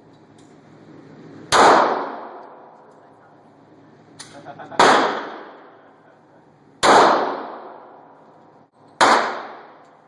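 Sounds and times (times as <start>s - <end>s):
pistol shots ringing out: 1.5s - 2.8s, 4.8s - 5.8s, 6.8s - 8.0s, 9.0s - 10.0s.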